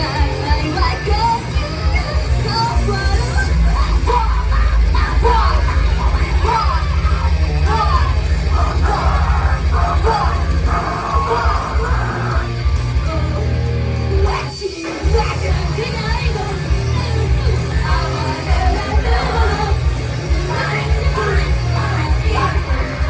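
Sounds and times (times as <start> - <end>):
heavy bass line: 0.0 - 23.0
loud rock music: 0.0 - 23.0
shouted sung vocals: 0.0 - 23.0.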